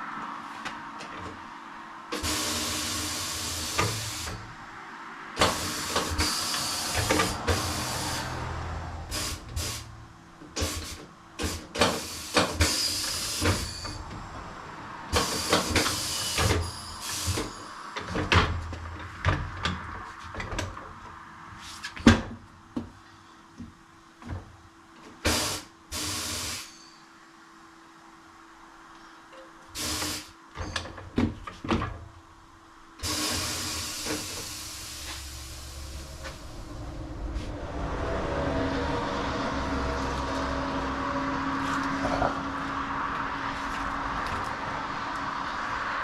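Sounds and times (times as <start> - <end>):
compressed air hissing: 5.4 - 10.0, 10.6 - 13.6, 25.2 - 26.8, 29.8 - 30.4, 33.0 - 36.6.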